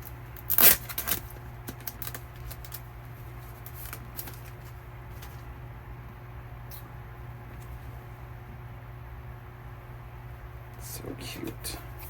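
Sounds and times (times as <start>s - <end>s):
photocard rustling: 0.4s - 2.8s, 3.4s - 5.5s.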